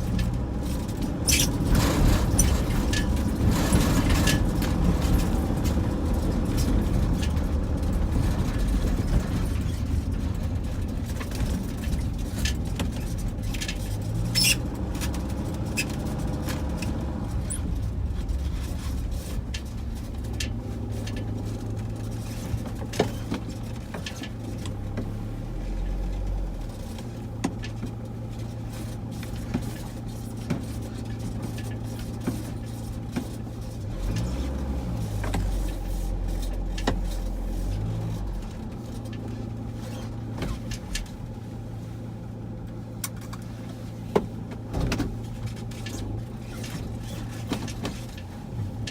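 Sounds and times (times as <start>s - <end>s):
deep rumble: 0.0s - 22.8s
low mechanical hum: 0.0s - 48.9s.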